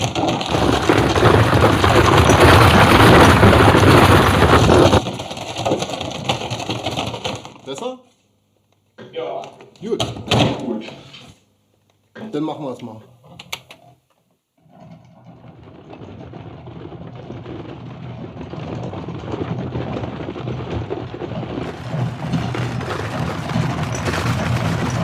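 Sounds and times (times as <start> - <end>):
carriage wheels rolling: 0.0 - 7.8, 14.7 - 25.0.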